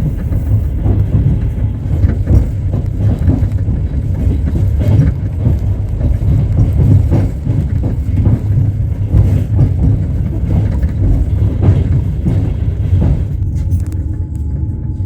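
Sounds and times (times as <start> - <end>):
low rumble of moving train: 0.0 - 15.0
train wheels clattering: 0.0 - 15.0.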